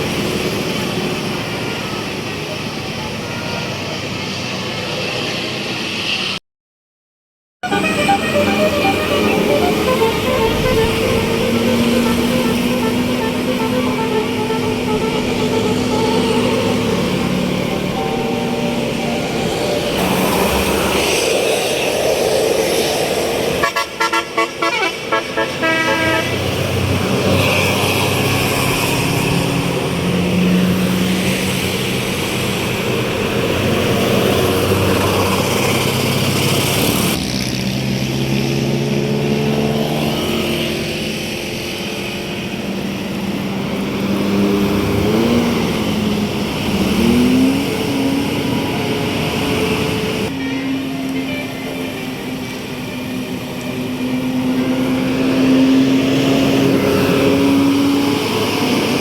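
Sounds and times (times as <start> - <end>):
bus engine and road noise: 0.0 - 6.4, 7.6 - 59.0
musical bus horns: 7.6 - 20.5, 23.5 - 29.5, 46.8 - 59.0.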